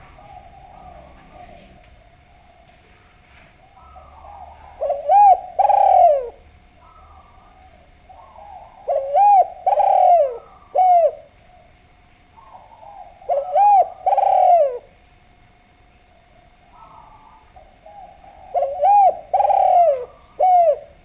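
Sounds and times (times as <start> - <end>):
dove cooing: 0.0 - 15.4, 16.0 - 21.0.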